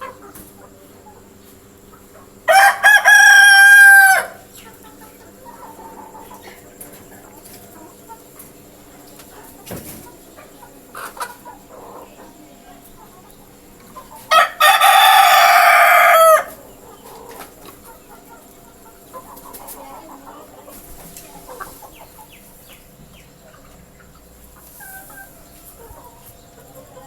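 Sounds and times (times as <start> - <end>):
hens clucking softly: 0.0 - 27.0
rooster crowing: 2.4 - 4.5, 14.2 - 16.7.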